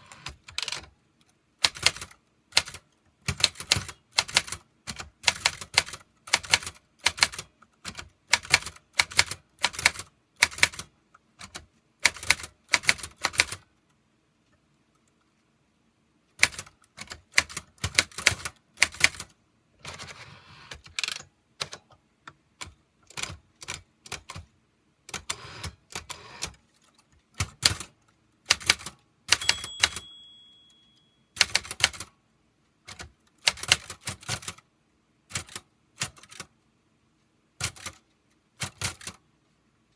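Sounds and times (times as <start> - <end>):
typewriter keys typing: 0.0 - 0.9, 1.6 - 13.7, 16.4 - 21.9, 22.6 - 24.5, 25.1 - 30.2, 31.4 - 32.1, 32.9 - 34.6, 35.3 - 36.5, 37.6 - 38.0, 38.6 - 39.2
short ringing tone: 29.4 - 31.4.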